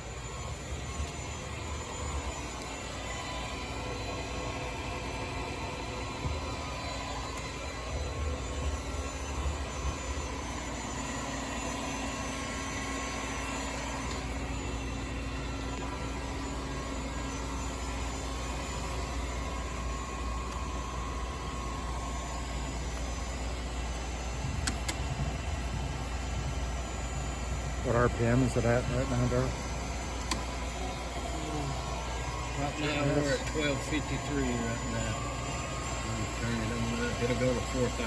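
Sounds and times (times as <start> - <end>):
milling machine hum and whine: 0.0 - 38.0.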